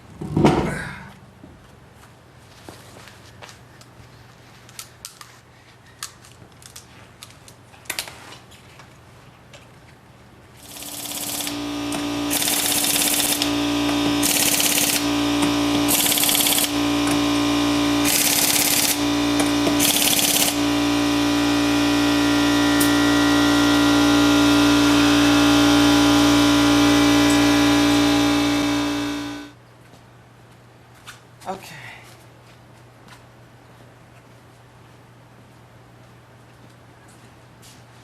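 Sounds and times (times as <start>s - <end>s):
faint garage hum: 0.0s - 38.0s
power tool whining: 10.6s - 29.6s
steady motor hum: 10.6s - 29.6s
impact wrench hammering: 10.7s - 29.5s.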